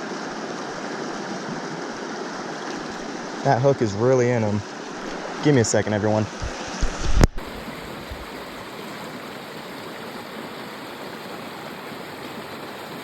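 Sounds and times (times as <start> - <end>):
stream water flowing: 0.0 - 13.0.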